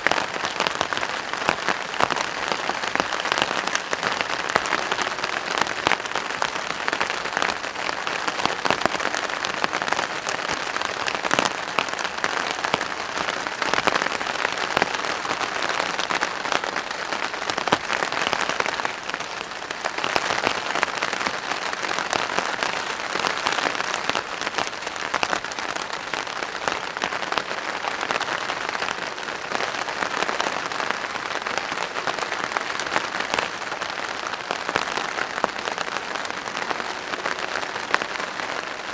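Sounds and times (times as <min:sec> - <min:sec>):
rain on a plastic tarp: 0:00.0 - 0:38.9.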